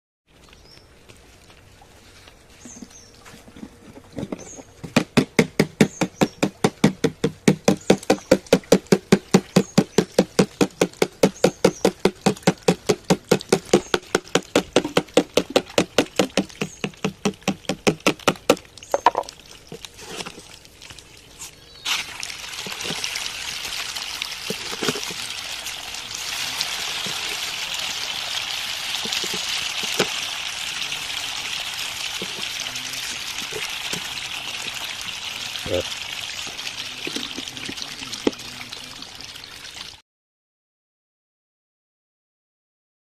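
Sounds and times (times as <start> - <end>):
rapid even slapping: 4.9 - 18.7.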